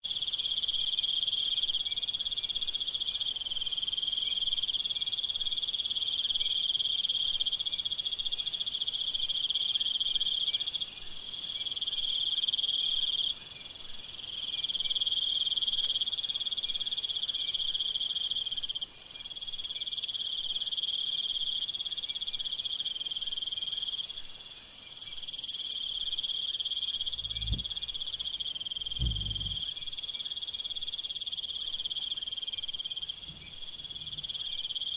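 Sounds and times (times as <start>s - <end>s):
insect trills: 14.5s - 34.9s
short low sounds: 27.0s - 29.7s.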